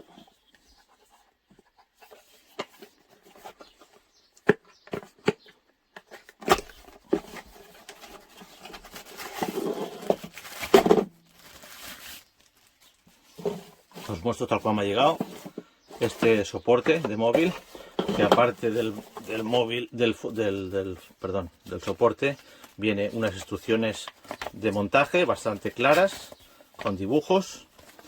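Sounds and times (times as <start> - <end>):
packaging clicks and knocks: 2.5 - 11.7, 15.0 - 19.4, 21.8 - 28.0
packaging rustling and rubbing: 6.0 - 28.0.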